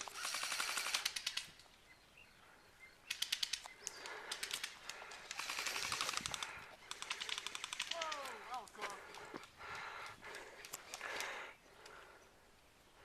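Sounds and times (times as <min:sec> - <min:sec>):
airsoft guns firing bursts: 0:00.0 - 0:01.5, 0:04.2 - 0:08.5.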